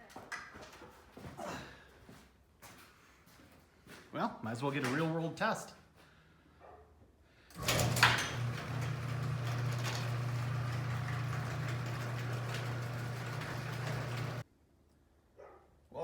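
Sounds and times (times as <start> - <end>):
garage door motor humming: 7.5 - 14.4
garage door opener clunk: 7.5 - 14.4.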